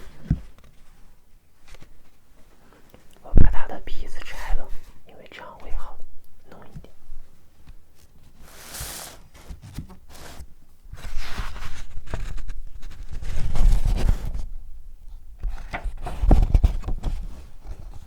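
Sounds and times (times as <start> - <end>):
paper rustling: 8.0 - 14.4.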